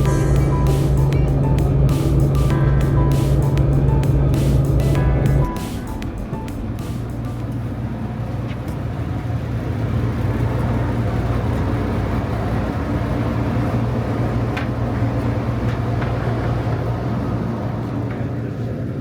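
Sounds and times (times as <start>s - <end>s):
rushing noise: 0.0s - 8.4s
engine droning: 0.0s - 19.0s.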